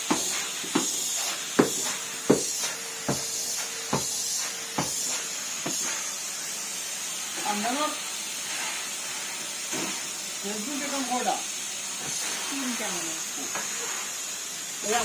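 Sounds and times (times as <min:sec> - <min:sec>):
vacuum cleaner running: 0:00.0 - 0:15.0.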